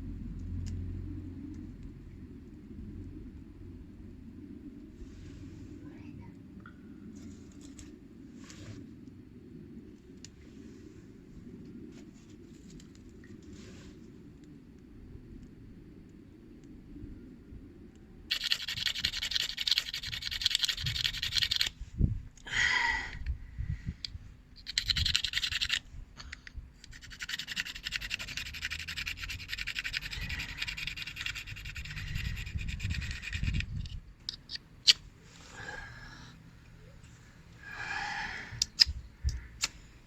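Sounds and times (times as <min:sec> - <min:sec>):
sharp clicks: 0:38.6 - 0:39.8.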